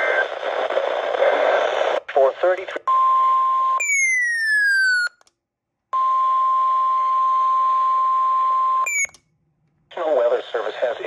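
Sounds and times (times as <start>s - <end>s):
radio hiss: 0.0s - 2.8s, 9.9s - 11.0s.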